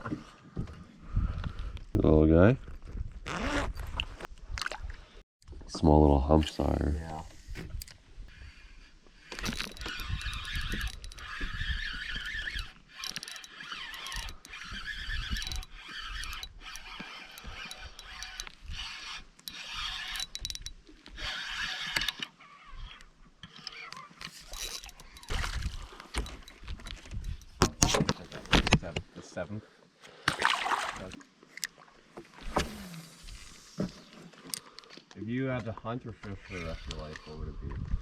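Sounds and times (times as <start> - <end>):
fishing reel whirring: 8.3 - 27.6
reel clicks and knocks: 9.3 - 22.3, 23.0 - 29.0.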